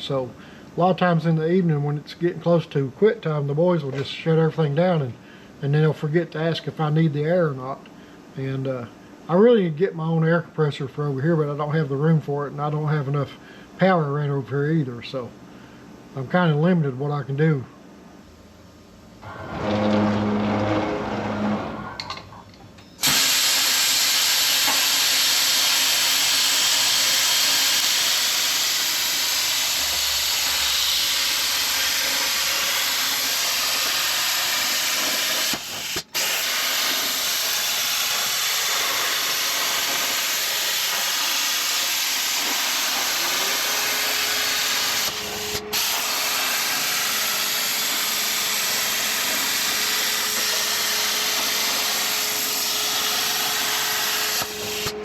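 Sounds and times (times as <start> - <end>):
plasma cutter hissing: 23.0 - 55.0.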